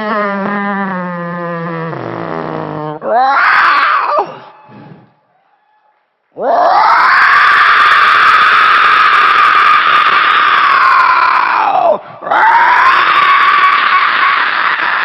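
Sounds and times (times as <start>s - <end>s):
monster roaring: 6.4s - 15.0s.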